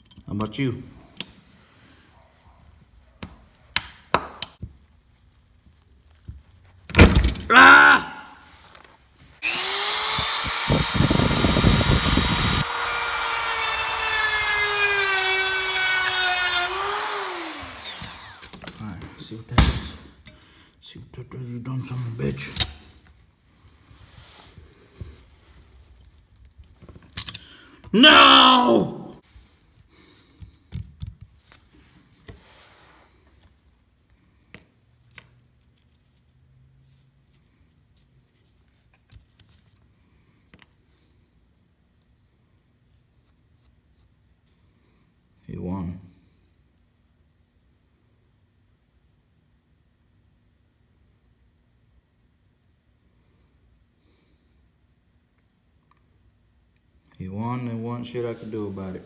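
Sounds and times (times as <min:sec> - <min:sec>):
small tools clicking and knocking: 0:00.0 - 0:00.3, 0:27.0 - 0:27.5
electric power tool spinning: 0:09.4 - 0:18.8
tool grinding against screw: 0:09.4 - 0:18.8.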